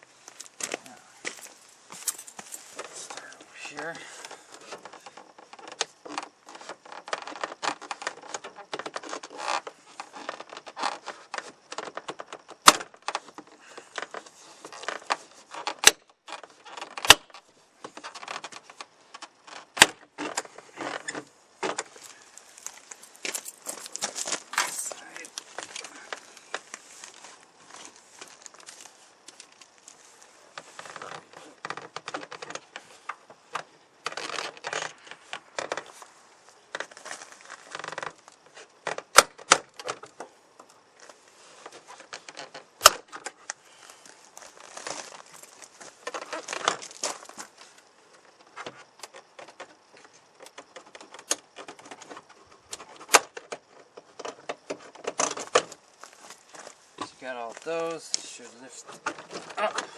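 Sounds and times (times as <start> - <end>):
sharp loud clicks: 38.9 - 40.0.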